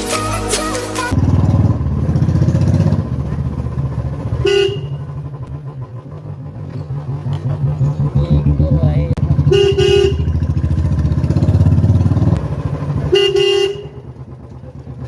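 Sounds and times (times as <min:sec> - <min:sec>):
motorcycle engine thumping: 0:01.1 - 0:15.0
motorcycle horn blast: 0:04.2 - 0:05.3, 0:09.3 - 0:11.0, 0:13.0 - 0:14.3.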